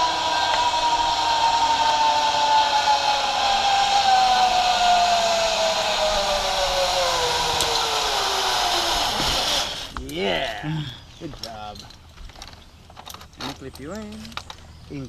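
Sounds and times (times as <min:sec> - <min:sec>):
zip line trolley whirring on cable: 0:00.0 - 0:10.0.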